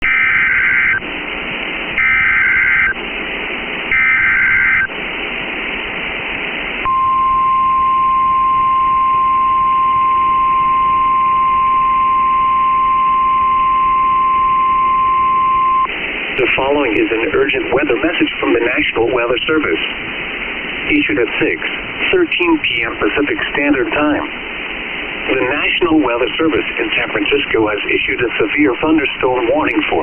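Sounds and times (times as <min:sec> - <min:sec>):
steady warning alarm tone: 0:00.0 - 0:01.0, 0:02.0 - 0:03.0, 0:03.9 - 0:04.9, 0:06.8 - 0:15.9
warbling data tones: 0:00.0 - 0:01.0, 0:02.0 - 0:03.0, 0:03.9 - 0:04.9
radio hiss: 0:00.0 - 0:07.1, 0:08.4 - 0:30.0.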